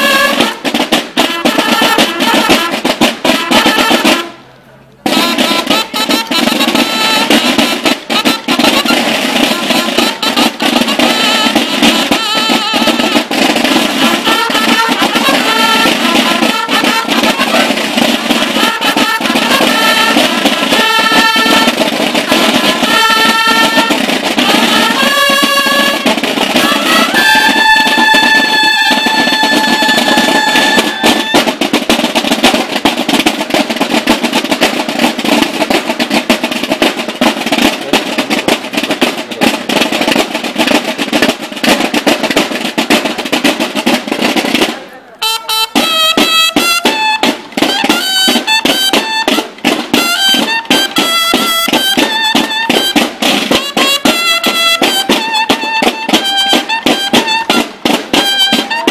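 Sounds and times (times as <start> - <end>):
snare drum rolls: 0.0 - 58.9.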